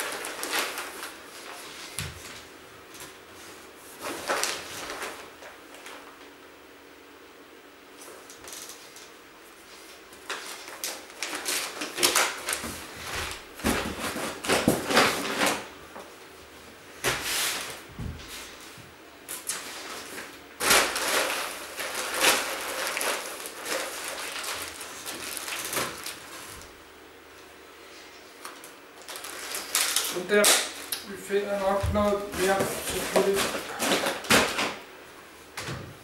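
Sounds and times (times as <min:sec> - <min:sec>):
household items rustling and clattering: 0:00.0 - 0:06.0, 0:10.2 - 0:16.1, 0:19.4 - 0:26.6, 0:28.4 - 0:30.3, 0:31.6 - 0:34.8.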